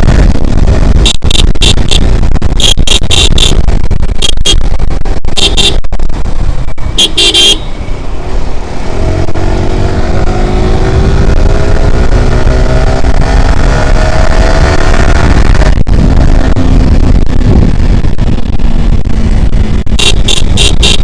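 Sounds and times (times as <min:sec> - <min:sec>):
motorcycle engine accelerating: 0:00.0 - 0:21.0
wind rumble on microphone: 0:00.0 - 0:21.0
horn toot: 0:01.0 - 0:03.6, 0:05.4 - 0:05.8, 0:07.0 - 0:07.7, 0:20.0 - 0:21.0.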